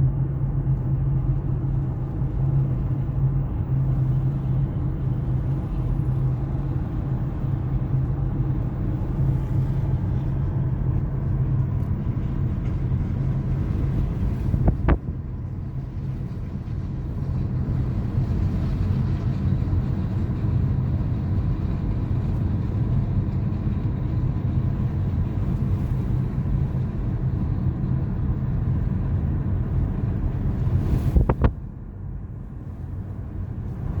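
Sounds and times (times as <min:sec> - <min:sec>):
diesel engine running: 0:00.0 - 0:34.0.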